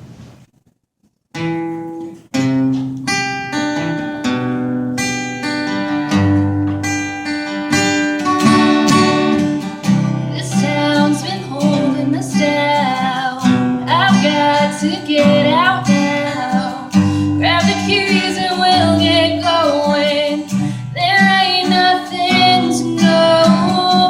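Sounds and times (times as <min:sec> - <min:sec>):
acoustic guitar strumming: 0:01.3 - 0:24.0
person singing: 0:10.3 - 0:24.0.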